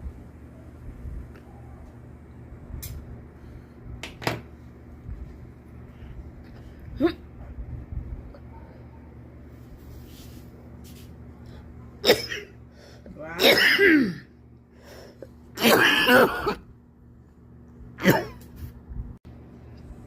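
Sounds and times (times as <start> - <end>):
person coughing: 12.0 - 12.6, 13.4 - 14.3, 15.6 - 16.7, 18.0 - 18.5.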